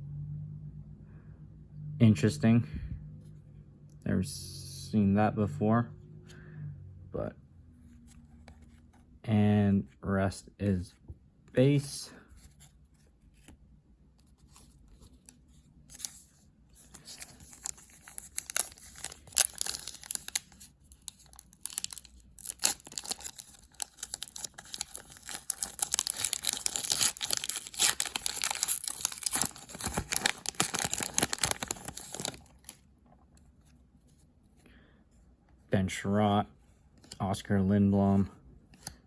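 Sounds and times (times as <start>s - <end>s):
foil wrapper tearing and crinkling: 16.9s - 32.8s.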